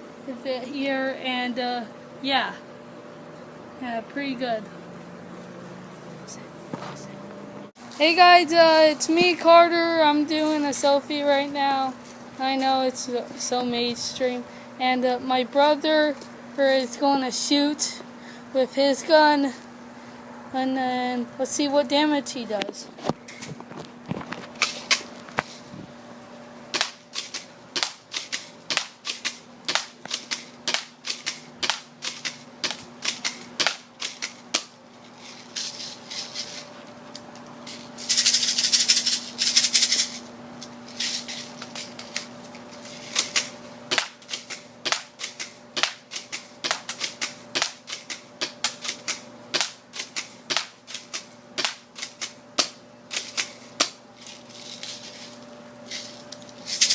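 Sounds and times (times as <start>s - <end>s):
airsoft gun firing: 26.7s - 34.7s, 43.2s - 53.4s.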